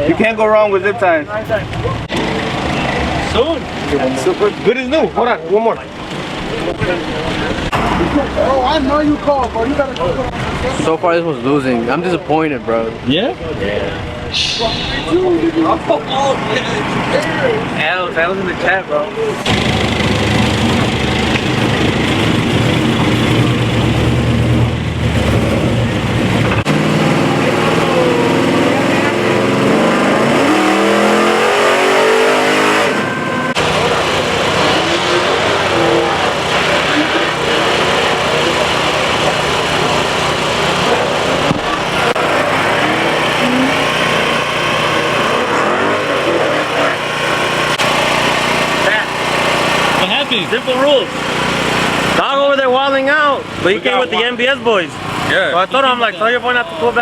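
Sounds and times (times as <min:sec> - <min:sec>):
car engine idling: 0:00.0 - 0:29.7, 0:31.1 - 0:53.7
different engine note: 0:19.5 - 0:51.9.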